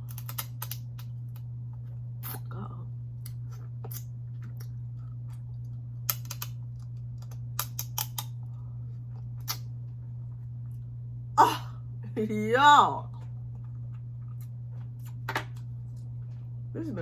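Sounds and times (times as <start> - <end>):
crab shells snapping: 0.0 - 1.4, 6.0 - 8.3
low hum: 0.0 - 17.0.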